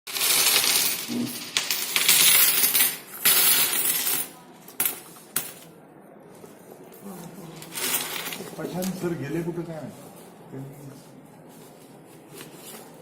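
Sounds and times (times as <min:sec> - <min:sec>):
coins clinking and rattling: 0:00.1 - 0:05.7, 0:07.6 - 0:08.6.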